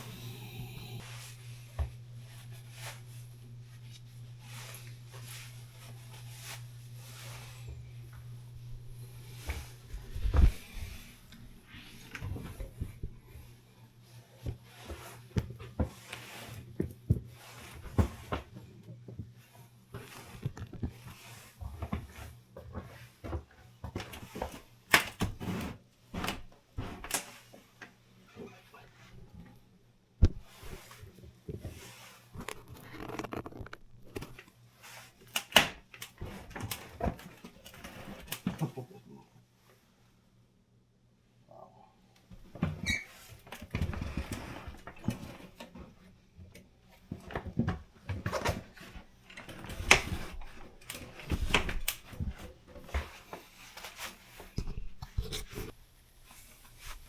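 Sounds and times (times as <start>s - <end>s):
faint low hum: 0.0s - 24.3s.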